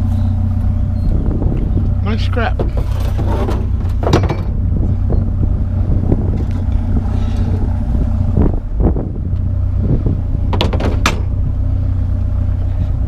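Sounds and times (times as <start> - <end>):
truck engine idling: 0.0 - 13.0
scrap metal knocks and clatters: 2.5 - 4.6.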